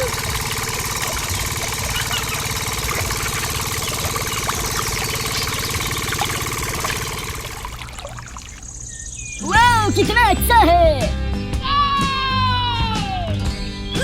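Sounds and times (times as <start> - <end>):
engine idling with knocking: 0.0 - 8.8.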